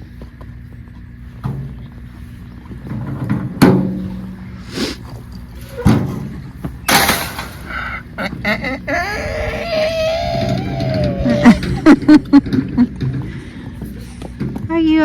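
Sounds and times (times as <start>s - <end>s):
gate banging and rattling: 5.6s - 8.6s.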